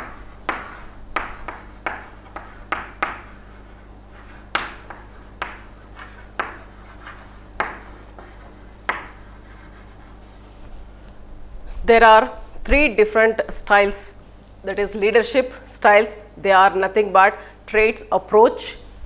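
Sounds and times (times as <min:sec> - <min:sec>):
pen writing taps and strokes: 0:00.0 - 0:03.5, 0:04.2 - 0:09.3.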